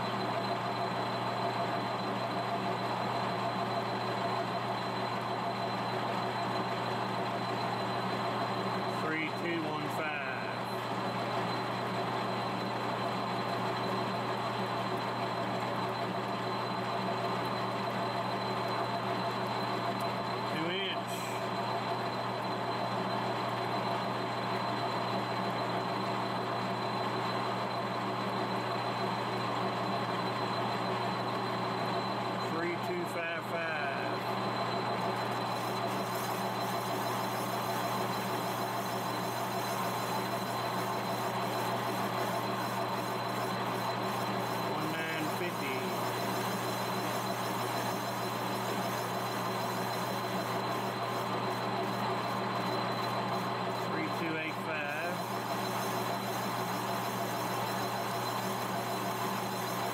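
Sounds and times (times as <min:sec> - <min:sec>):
metal lathe running: 0:00.0 - 0:59.9.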